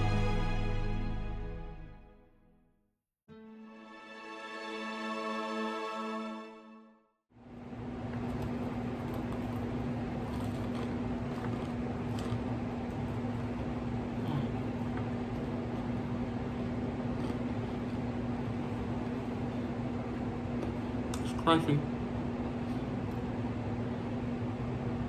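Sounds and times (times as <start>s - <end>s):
steady low hum: 7.6s - 25.0s
chewing crispy food: 8.3s - 19.5s.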